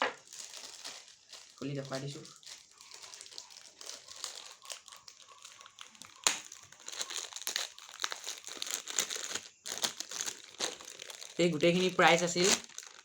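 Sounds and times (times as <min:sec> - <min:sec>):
packaging crinkling: 0:00.0 - 0:13.0
sharp crack: 0:06.2 - 0:06.5.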